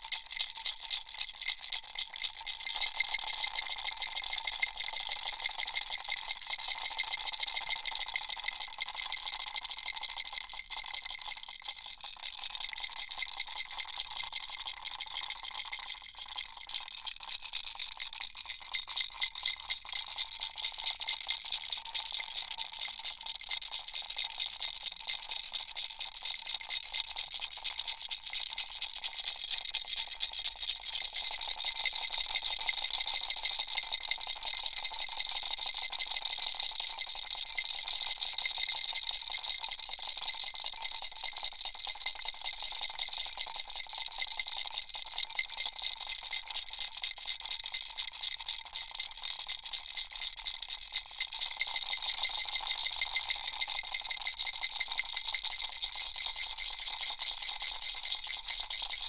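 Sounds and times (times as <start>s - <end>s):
baby rattle shaking: 50.1s - 59.0s.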